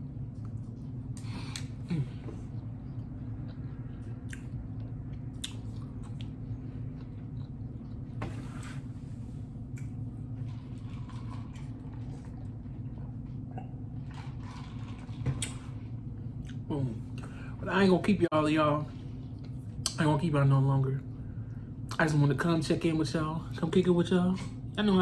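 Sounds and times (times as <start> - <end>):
steady low hum: 0.0 - 25.0
person chewing and eating: 0.2 - 17.3.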